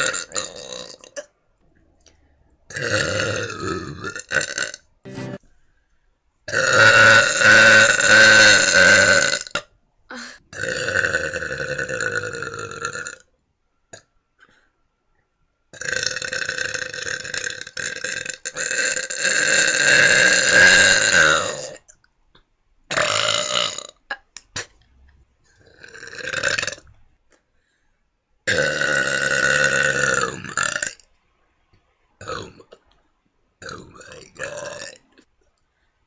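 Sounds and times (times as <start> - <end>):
person burping: 0.0 - 1.3, 6.6 - 13.2, 15.8 - 18.6, 28.5 - 31.0.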